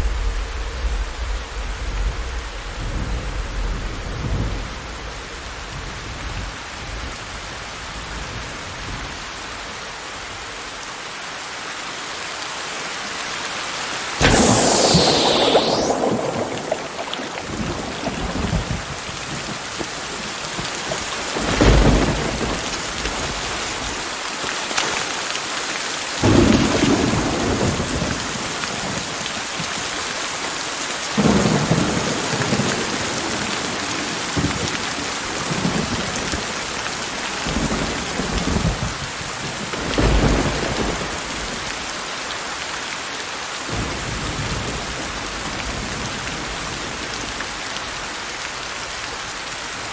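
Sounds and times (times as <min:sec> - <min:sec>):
heavy rain falling: 0:00.0 - 0:49.9
thunder rumbling: 0:14.2 - 0:19.0.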